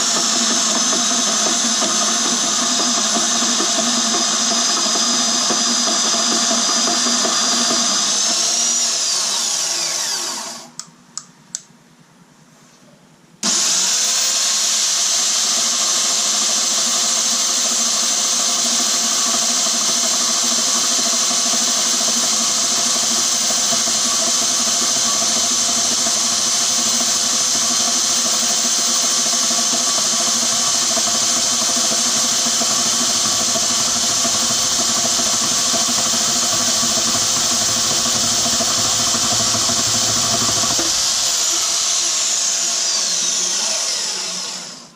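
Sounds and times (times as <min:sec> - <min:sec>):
bandsaw motor whining: 0:00.0 - 0:11.3, 0:13.4 - 0:44.9
clicks: 0:10.6 - 0:11.7.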